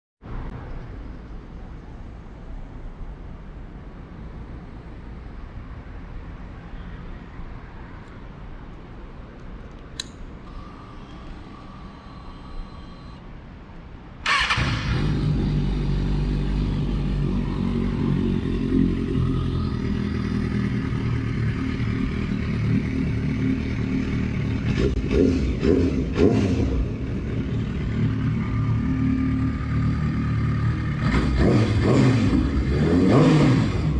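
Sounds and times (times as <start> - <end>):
click: 9.4 - 10.2
motorcycle engine starting and idling: 10.0 - 13.2, 14.2 - 33.9
faint high whine: 10.4 - 13.5.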